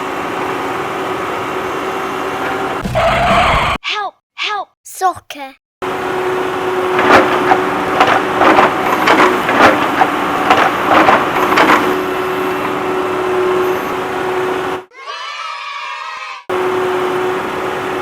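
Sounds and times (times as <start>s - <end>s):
sharp knocks and clatters: 6.9s - 12.1s.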